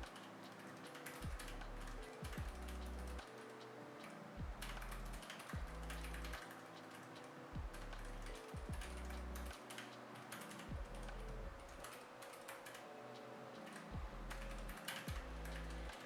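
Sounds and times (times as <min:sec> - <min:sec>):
mechanical keyboard typing: 0:04.6 - 0:07.0, 0:08.3 - 0:12.9, 0:13.6 - 0:16.0.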